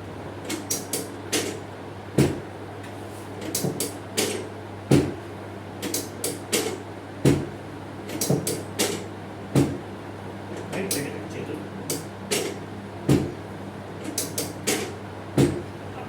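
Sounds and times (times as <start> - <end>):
steady low hum: 0.0 - 16.0
knocks and thumps on back: 2.2 - 2.4, 4.9 - 5.2, 6.6 - 7.6, 8.2 - 9.9, 12.3 - 13.4, 14.7 - 15.7.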